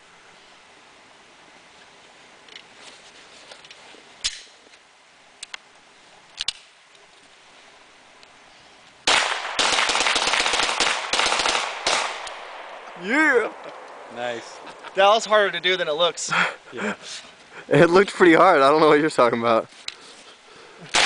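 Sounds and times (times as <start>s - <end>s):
metallic pistol clicks: 4.2s - 4.5s, 6.4s - 6.7s
rapid pistol fire: 9.1s - 12.7s.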